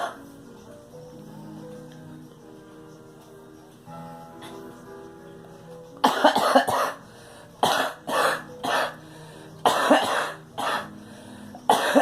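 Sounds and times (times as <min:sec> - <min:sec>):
girl coughing: 0:06.0 - 0:07.0, 0:07.6 - 0:09.0, 0:09.7 - 0:10.9, 0:11.7 - 0:12.0.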